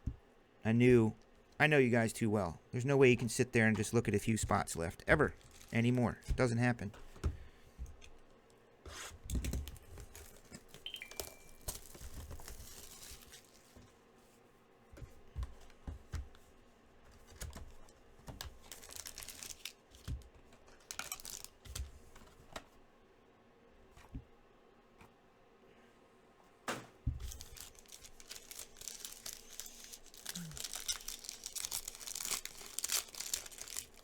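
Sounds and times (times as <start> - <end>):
card pack wrappers tearing: 5.3 - 6.0, 9.7 - 13.7, 18.3 - 21.8, 27.2 - 34.0.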